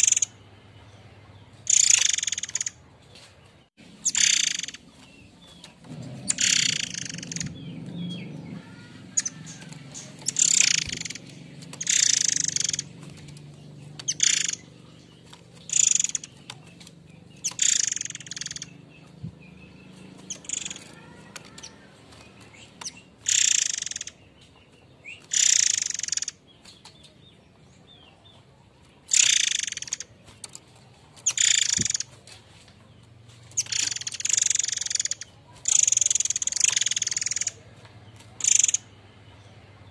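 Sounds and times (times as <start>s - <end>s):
bird giving harsh rasping calls: 1.6s - 2.8s, 4.0s - 24.3s, 25.2s - 26.4s, 29.1s - 30.1s, 31.2s - 32.1s, 33.6s - 37.6s, 38.4s - 38.9s.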